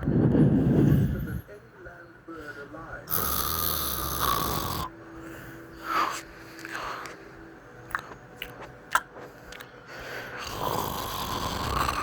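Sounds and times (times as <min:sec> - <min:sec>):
soft breath: 0:00.0 - 0:01.6, 0:05.1 - 0:07.4, 0:09.2 - 0:10.6
mouth clicks and smacks: 0:07.8 - 0:09.8.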